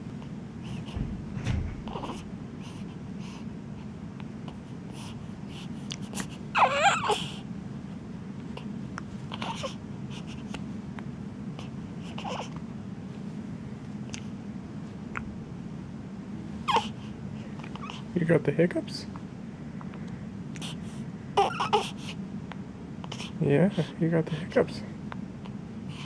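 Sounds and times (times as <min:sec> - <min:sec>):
low room hum: 0:00.0 - 0:26.0
baby fussing cry: 0:06.6 - 0:07.3, 0:09.3 - 0:09.8, 0:21.4 - 0:22.0.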